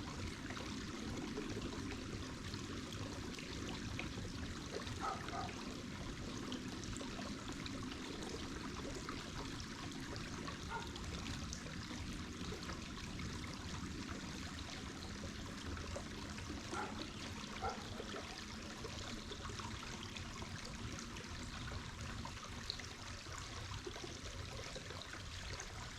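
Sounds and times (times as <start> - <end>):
running water rushing: 0.0 - 25.9.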